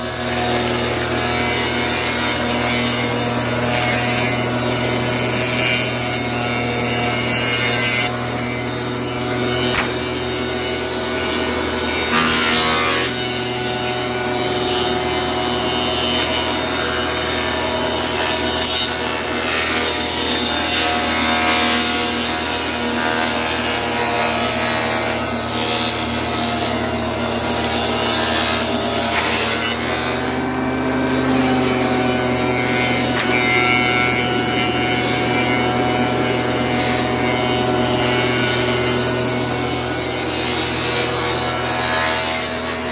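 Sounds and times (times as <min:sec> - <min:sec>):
cutter shaping wood: 0:00.0 - 0:42.9
motor hum: 0:27.1 - 0:42.9.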